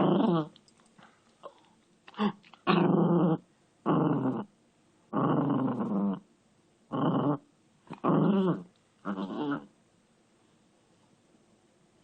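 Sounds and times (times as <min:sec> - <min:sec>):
dog growling playfully: 0:00.0 - 0:00.6, 0:01.4 - 0:04.5, 0:05.1 - 0:06.3, 0:06.9 - 0:09.8.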